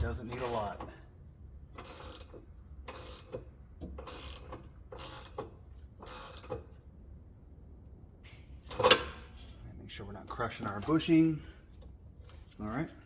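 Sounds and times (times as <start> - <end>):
ratcheting wrench clicking: 1.8 - 6.8.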